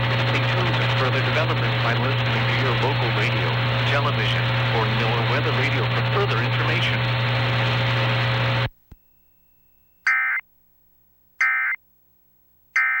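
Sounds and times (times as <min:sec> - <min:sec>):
radio hiss and hum: 0:00.0 - 0:08.7.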